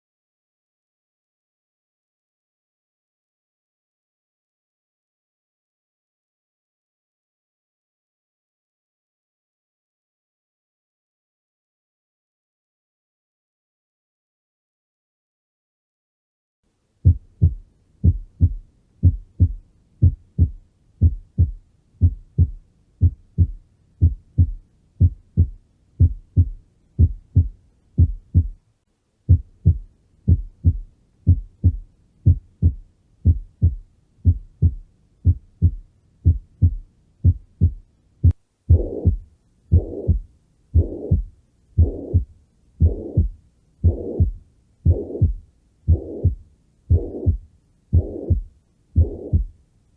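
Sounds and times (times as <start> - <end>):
heartbeat thumps: 17.0 - 28.6, 29.3 - 49.6
heartbeat with whooshing murmur: 17.0 - 28.6, 29.3 - 49.6.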